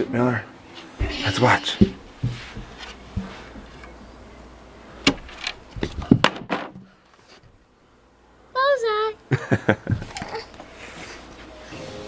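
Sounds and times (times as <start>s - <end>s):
wooden chunks knocking and clattering: 5.1s - 7.0s.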